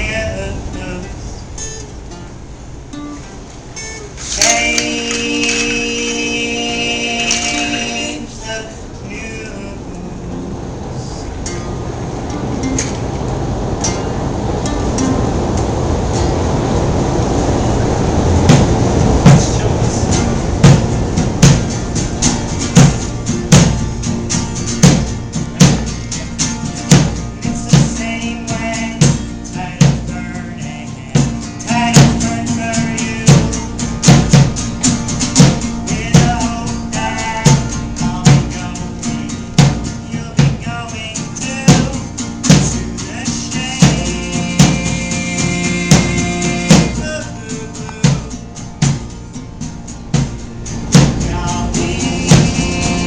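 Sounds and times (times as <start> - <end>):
bass drum steady beat: 18.4 - 40.8, 41.6 - 43.0, 43.6 - 47.3, 47.9 - 53.0
live band playing: 43.8 - 47.2.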